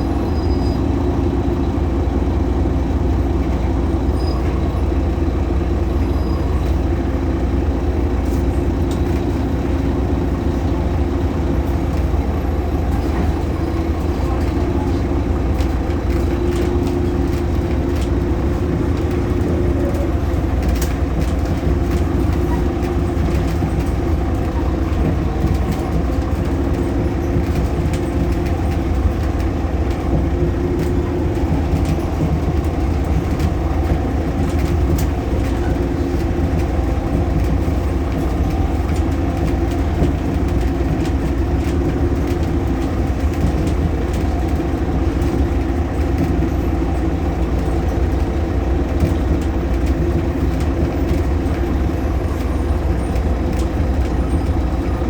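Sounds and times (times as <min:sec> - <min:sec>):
diesel bus engine running: 0:00.0 - 0:55.0
engine belt noise: 0:00.0 - 0:55.0.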